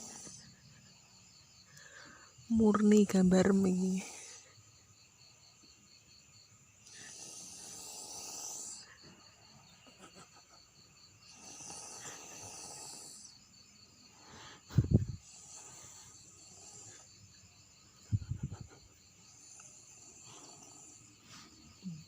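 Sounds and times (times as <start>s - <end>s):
person snoring: 0.0s - 0.4s, 6.8s - 8.9s, 11.3s - 13.3s, 15.0s - 17.1s.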